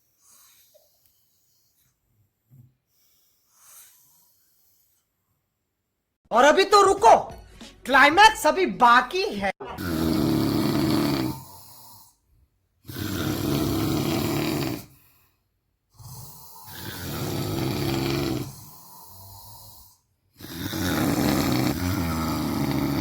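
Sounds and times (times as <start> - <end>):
man snoring heavily: 9.8 - 12.2, 12.8 - 15.1, 15.9 - 23.0.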